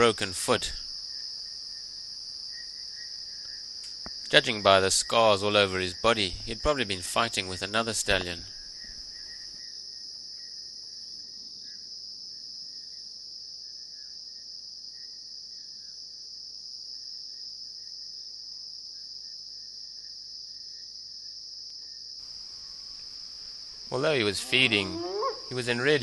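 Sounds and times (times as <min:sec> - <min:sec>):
high-pitched insect chorus: 0:00.0 - 0:16.1, 0:21.8 - 0:26.0
faint insect chirps: 0:00.0 - 0:26.0.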